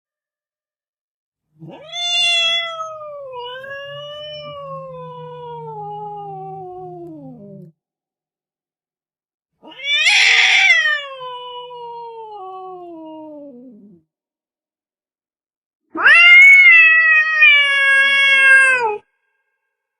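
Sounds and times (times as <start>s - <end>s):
cat yowling: 1.6s - 7.6s, 9.6s - 14.0s, 15.9s - 19.1s.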